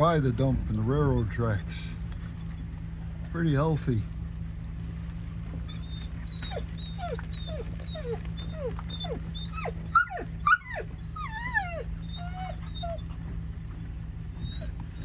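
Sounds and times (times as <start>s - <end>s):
low hum: 0.0s - 15.0s
dogs whining: 5.3s - 13.4s, 14.3s - 15.0s
dog yelps: 5.6s - 13.2s, 14.4s - 15.0s.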